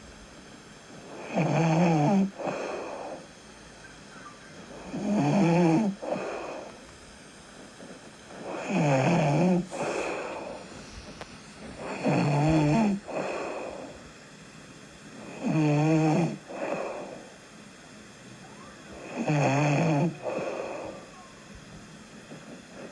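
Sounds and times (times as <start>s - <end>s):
person snoring: 1.0s - 3.3s, 4.7s - 6.8s, 8.4s - 10.8s, 11.8s - 14.0s, 15.2s - 17.3s, 19.0s - 21.3s
soft breath: 2.2s - 3.5s, 5.8s - 8.7s, 9.4s - 14.3s, 16.5s - 17.6s, 20.1s - 22.9s.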